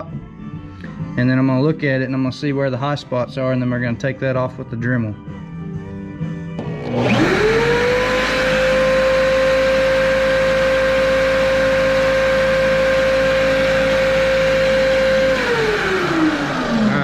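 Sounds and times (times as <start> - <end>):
lathe motor whining: 6.6 - 17.0.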